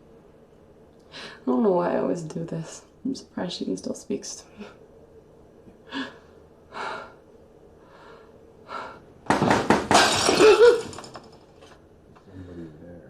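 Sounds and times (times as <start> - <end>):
object breaking and shattering: 9.3 - 11.4.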